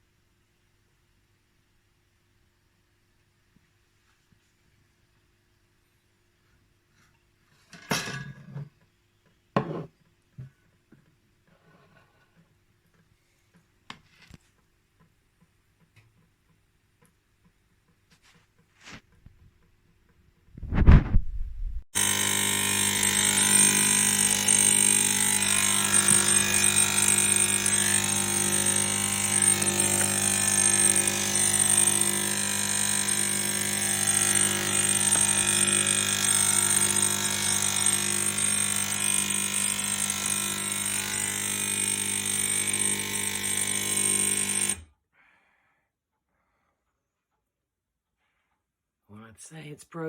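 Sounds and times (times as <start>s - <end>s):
espresso machine pump buzzing: 22.0s - 44.8s.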